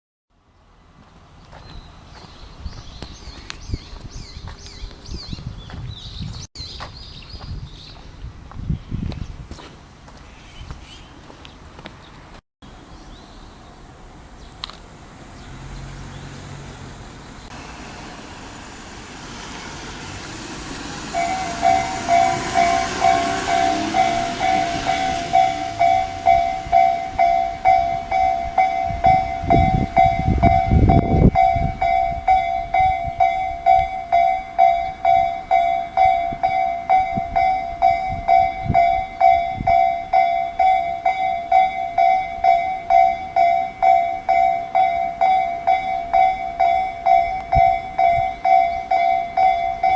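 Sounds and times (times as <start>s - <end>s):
passing traffic rush: 11.2s - 49.9s
low rumbling: 15.0s - 40.0s
level-crossing two-tone bell: 20.3s - 49.9s.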